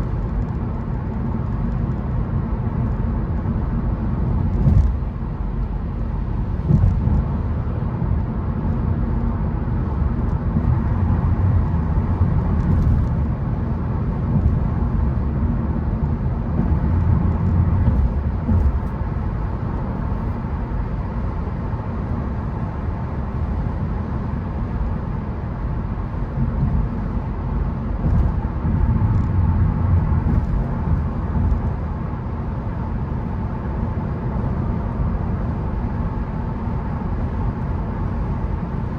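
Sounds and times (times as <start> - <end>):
tyre and engine rumble: 0.0 - 21.4, 26.0 - 33.5.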